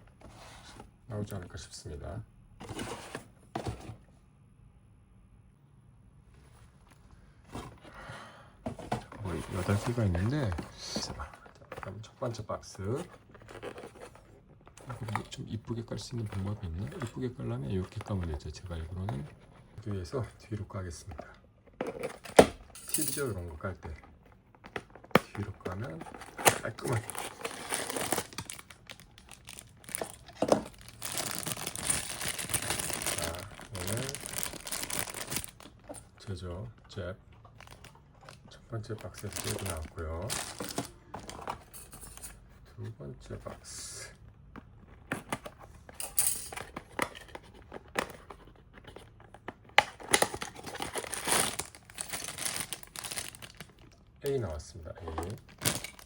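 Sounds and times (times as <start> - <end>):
packaging crinkling: 23.3 - 35.9, 39.0 - 41.6, 49.7 - 54.0, 55.1 - 56.0.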